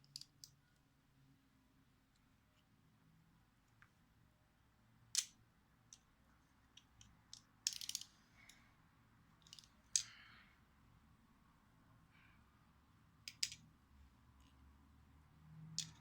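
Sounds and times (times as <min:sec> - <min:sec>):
plastic pieces clicking and rattling: 0:00.0 - 0:00.6, 0:06.8 - 0:08.6, 0:09.4 - 0:10.1, 0:13.3 - 0:13.6, 0:15.8 - 0:16.0.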